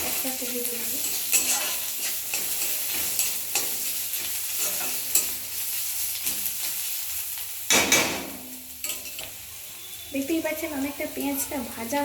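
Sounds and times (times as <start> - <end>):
spatula scraping a pan: 0.0 - 7.0
onion paste sizzling in oil: 0.0 - 12.0
knock on pan: 7.7 - 8.5.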